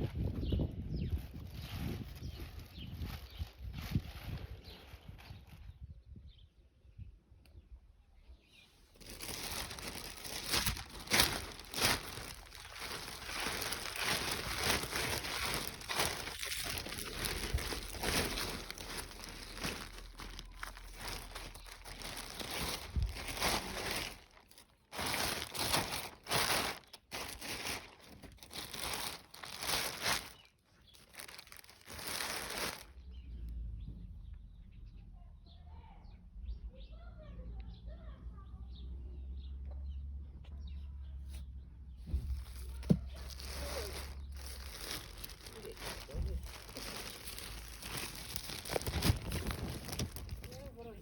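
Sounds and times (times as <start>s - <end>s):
dry crinkling and rustling: 8.9s - 33.0s, 42.0s - 51.0s.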